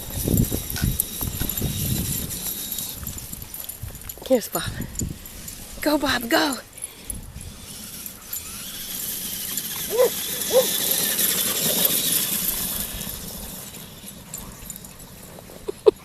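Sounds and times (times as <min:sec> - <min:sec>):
toy car electric motor whining: 0:00.0 - 0:04.2, 0:04.8 - 0:15.7
short squeaky calls: 0:06.8 - 0:12.0.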